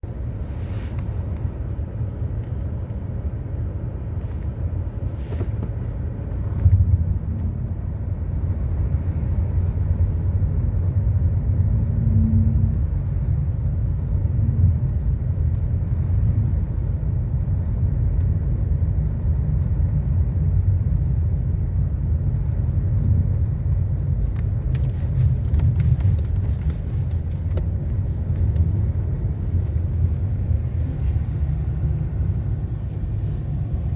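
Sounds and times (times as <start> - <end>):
car engine rumbling: 0.0 - 33.9.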